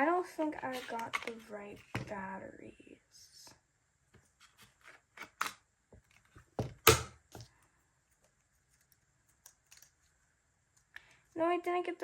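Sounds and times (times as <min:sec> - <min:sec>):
clicks and knocks of handled batteries: 0:00.7 - 0:02.1, 0:05.2 - 0:07.6.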